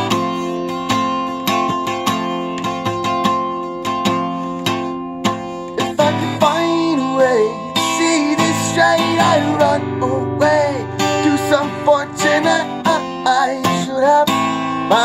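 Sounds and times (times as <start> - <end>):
guitar strumming chords: 0.0 - 15.0
person singing: 5.7 - 15.0.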